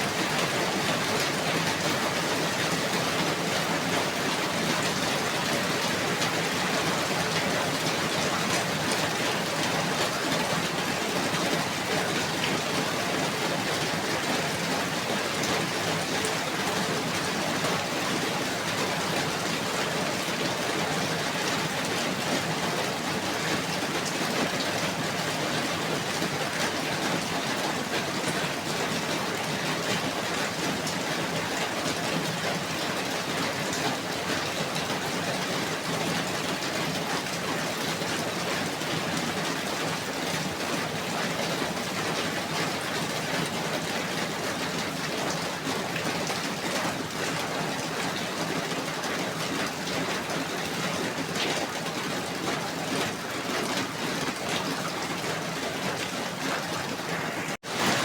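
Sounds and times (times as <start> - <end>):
steady rainfall: 0.0 - 58.0.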